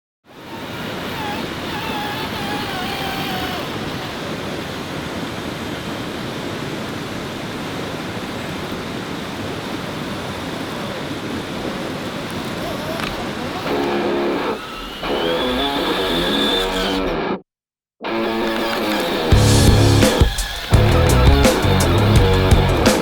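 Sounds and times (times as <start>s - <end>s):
river water rushing: 0.4s - 16.7s.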